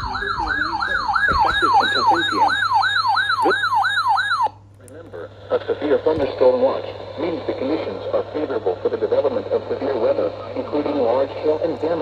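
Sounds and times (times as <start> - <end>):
siren yelping: 0.0 - 4.6.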